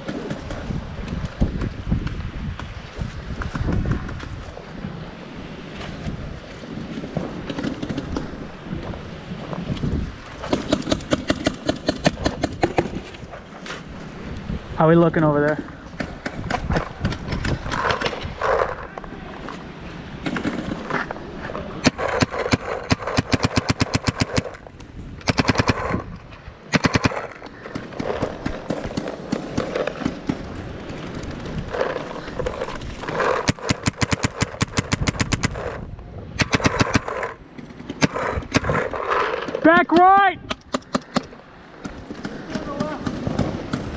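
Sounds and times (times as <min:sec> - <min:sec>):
paintball marker rapid firing: 0:10.4 - 0:13.1, 0:15.9 - 0:19.0, 0:20.2 - 0:21.1, 0:21.8 - 0:24.6, 0:25.2 - 0:43.9.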